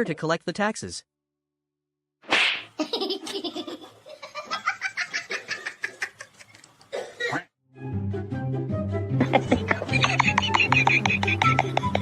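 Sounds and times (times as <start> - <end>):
people laughing: 2.8 - 6.6, 9.2 - 12.0.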